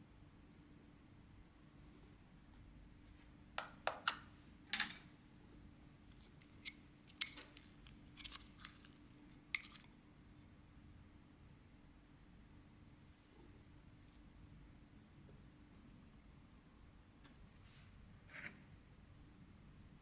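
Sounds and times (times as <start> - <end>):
faint steady hum: 0.0 - 20.0
kitchenware clicking and clinking: 3.9 - 5.1, 9.6 - 9.8.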